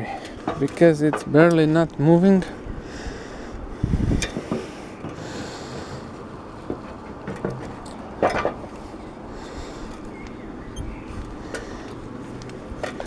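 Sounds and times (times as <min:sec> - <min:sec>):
hissy breaths: 0:02.4 - 0:06.9, 0:08.7 - 0:12.8.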